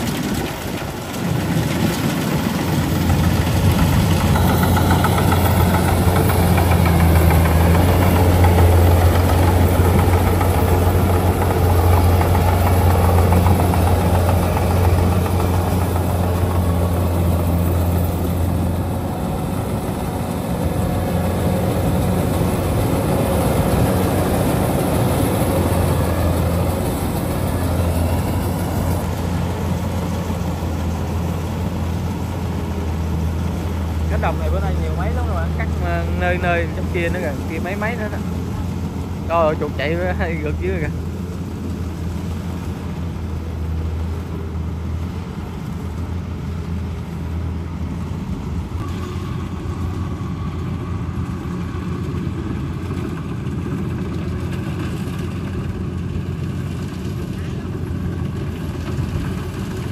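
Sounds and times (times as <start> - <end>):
combine harvester engine humming: 0.0 - 59.9.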